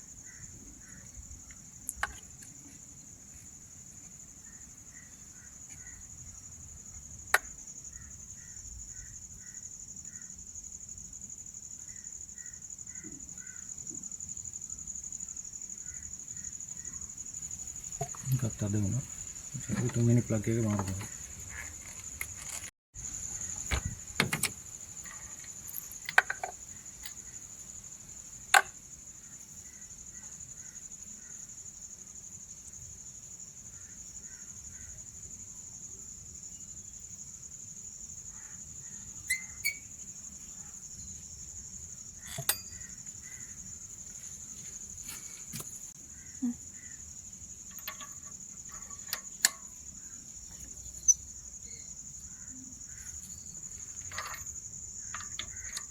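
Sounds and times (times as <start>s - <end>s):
crickets chirping: 0.0s - 55.9s
hand tools clicking and knocking: 42.3s - 42.8s, 47.7s - 49.7s, 53.9s - 55.9s.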